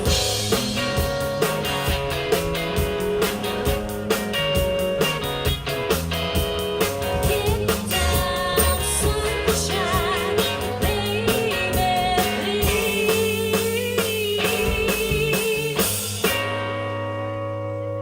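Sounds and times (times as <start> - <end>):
steady drum beat: 0.0 - 16.6
guitar: 0.0 - 18.0
woman singing: 7.0 - 16.1.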